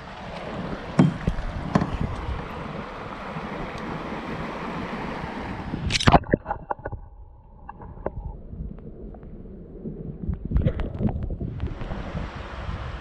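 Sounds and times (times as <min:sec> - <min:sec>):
rushing water: 0:00.0 - 0:13.0
wind noise: 0:00.0 - 0:13.0
loud knock: 0:01.0 - 0:02.0.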